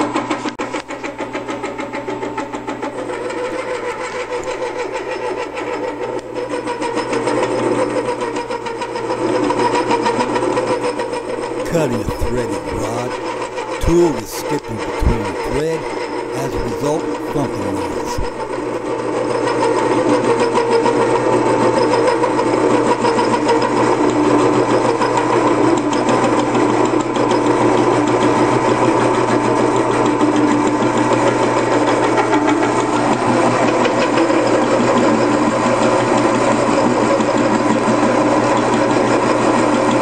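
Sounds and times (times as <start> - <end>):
lathe humming: 0.6 - 19.9.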